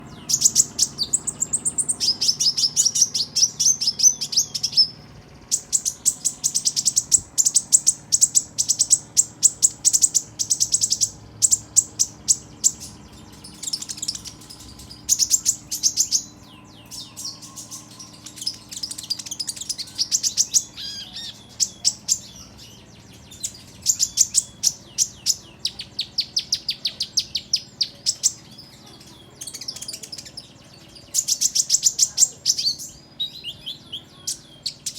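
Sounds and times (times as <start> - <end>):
sunbird high thin chirps: 0.0 - 34.9.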